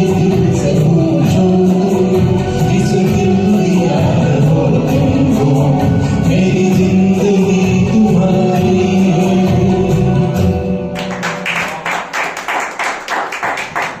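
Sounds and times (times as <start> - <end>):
karaoke backing track: 0.0 - 12.1
people clapping: 10.9 - 14.0.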